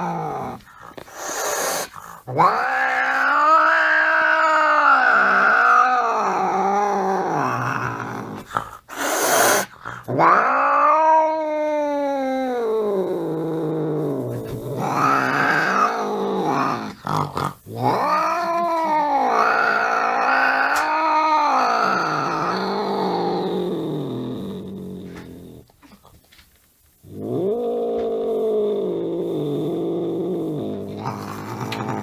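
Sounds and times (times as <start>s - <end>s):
angry cat yowling: 1.2s - 8.4s, 9.0s - 17.0s, 17.8s - 24.1s.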